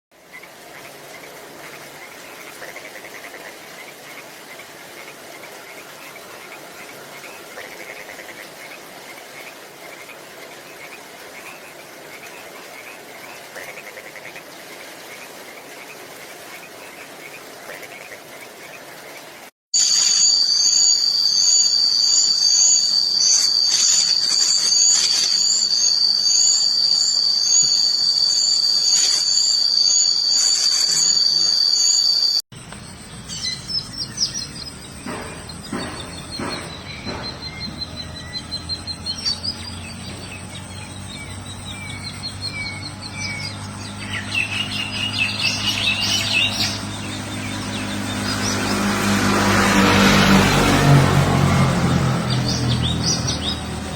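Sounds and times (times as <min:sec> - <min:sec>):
high insect-like trill: 0:19.8 - 0:32.4
small birds chirping: 0:19.8 - 0:49.0.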